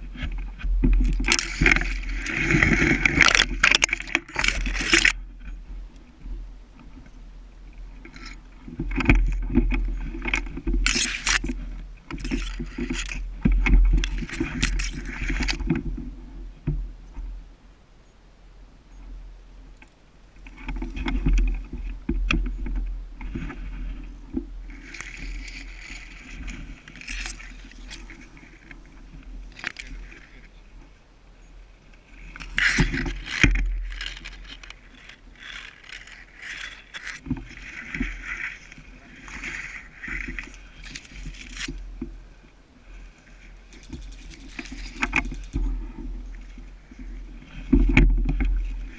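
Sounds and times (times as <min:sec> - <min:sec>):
rustling and scraping: 0:00.0 - 0:17.3, 0:20.4 - 0:48.9.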